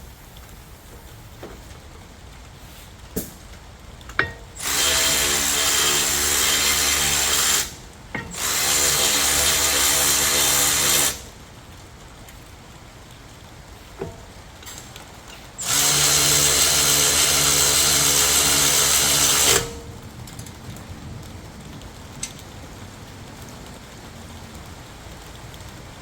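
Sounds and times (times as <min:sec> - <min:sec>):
power tool motor running: 0:04.2 - 0:11.3, 0:15.6 - 0:19.9.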